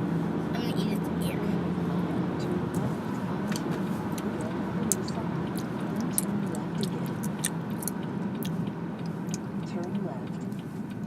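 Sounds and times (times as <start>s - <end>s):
steady low hum: 0.0s - 11.0s
mouth chewing gummy candy: 3.6s - 10.7s.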